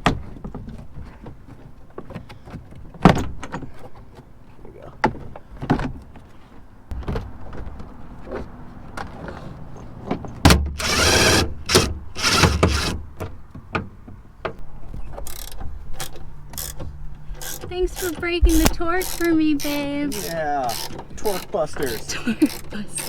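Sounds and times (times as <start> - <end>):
ratchet wrench clicking: 17.4 - 18.1, 19.0 - 22.7.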